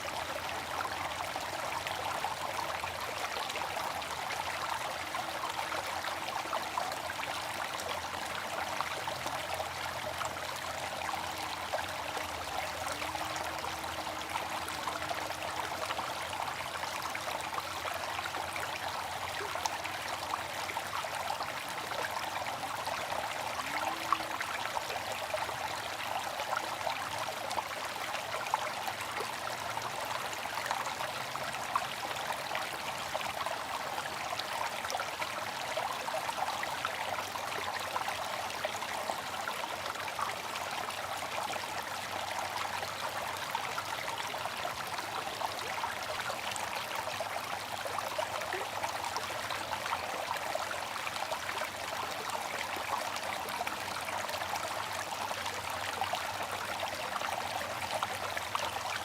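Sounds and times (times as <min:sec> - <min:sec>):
water trickling: 0:00.0 - 0:59.0.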